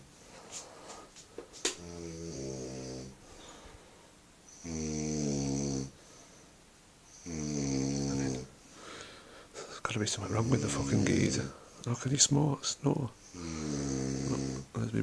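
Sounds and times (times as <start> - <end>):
man snoring heavily: 1.8 - 3.2, 4.6 - 6.0, 7.2 - 8.5, 10.3 - 11.6, 13.3 - 14.7.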